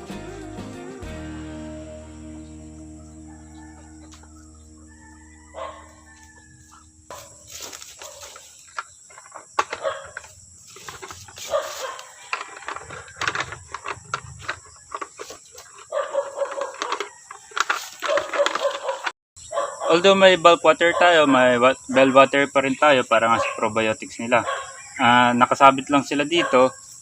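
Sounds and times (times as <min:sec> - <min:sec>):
chickens squawking: 0:00.0 - 0:08.4
rustling: 0:05.2 - 0:19.1.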